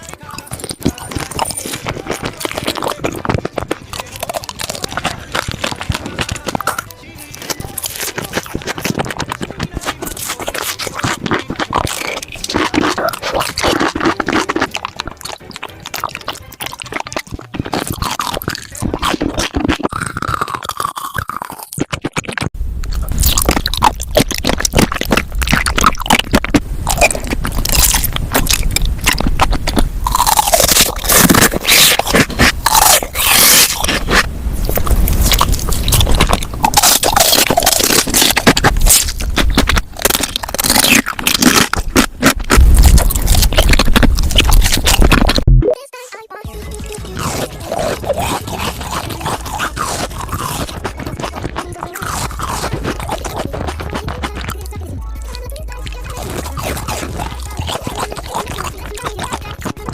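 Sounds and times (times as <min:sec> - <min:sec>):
crunching and chewing crisp food: 0:00.0 - 0:45.6, 0:46.4 - 0:59.9
low hum: 0:42.4 - 0:45.8.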